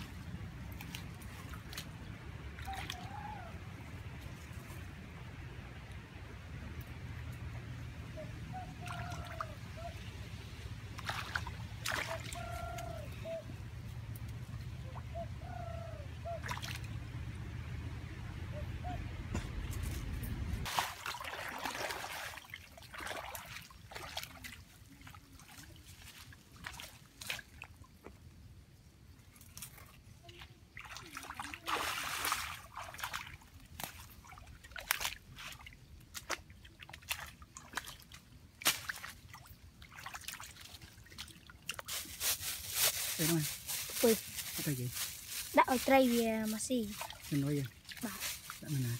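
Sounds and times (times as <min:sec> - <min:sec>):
water splashing and trickling: 0:00.0 - 0:18.2, 0:19.8 - 0:48.9
steady low rumble: 0:09.4 - 0:20.7.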